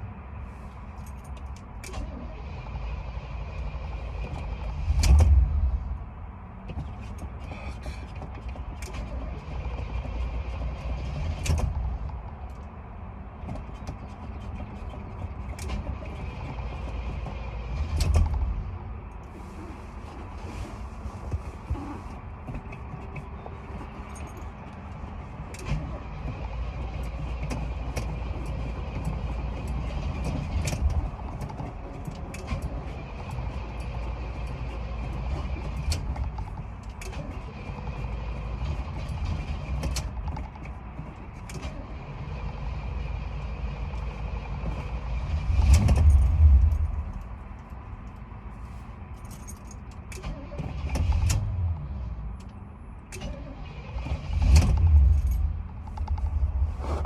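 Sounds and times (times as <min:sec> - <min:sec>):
car engine cranking: 0:13.4 - 0:20.7, 0:21.5 - 0:52.5, 0:53.1 - 0:57.0.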